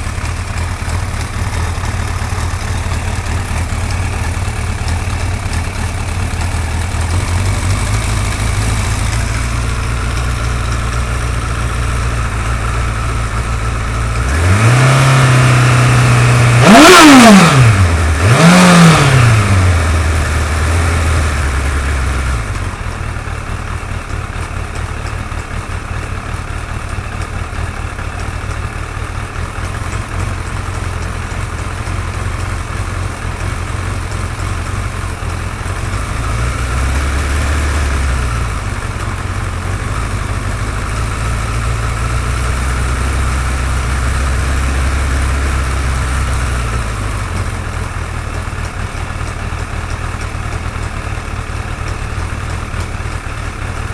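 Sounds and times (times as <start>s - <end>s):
motorcycle engine idling: 0.0s - 53.9s.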